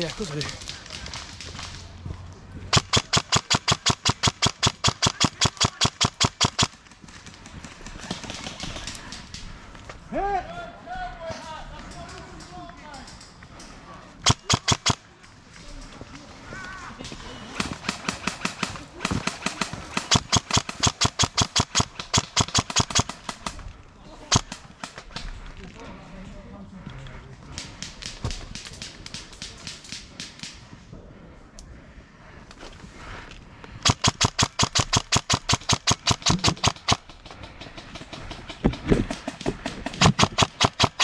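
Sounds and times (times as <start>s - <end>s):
airsoft gun firing: 2.7s - 7.0s, 14.2s - 15.0s, 17.5s - 23.6s, 24.3s - 25.0s, 33.8s - 41.0s
airsoft gun firing full auto: 17.6s - 23.6s, 37.8s - 41.0s.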